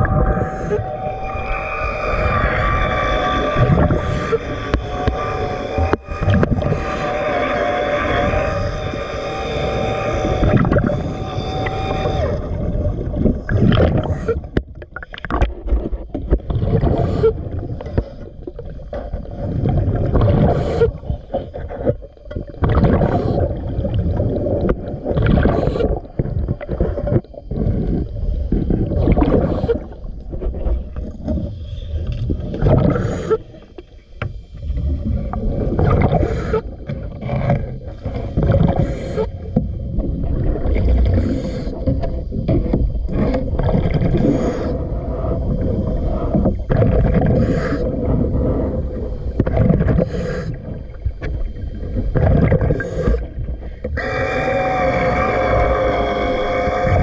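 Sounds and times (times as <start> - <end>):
exhaled bubbles rumbling: 0.0 - 57.0
regulator hiss on inhale: 41.1 - 42.1, 47.3 - 49.4, 50.0 - 52.0.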